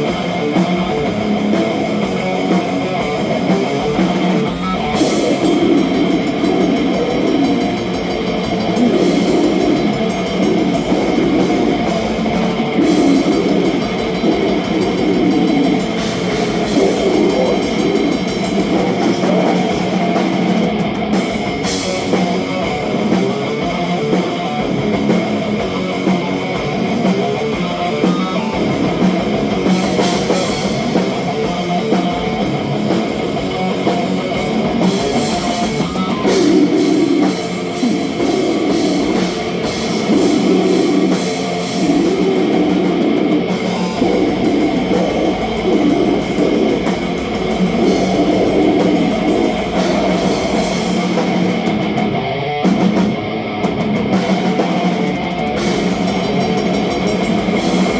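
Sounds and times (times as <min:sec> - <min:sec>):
distorted electric guitars: 0:00.0 - 0:57.9
drum kit: 0:00.0 - 0:57.9.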